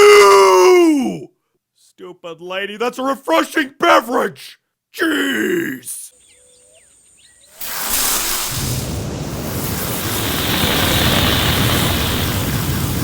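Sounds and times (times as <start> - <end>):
rushing noise with deep rumble: 7.9 - 13.0.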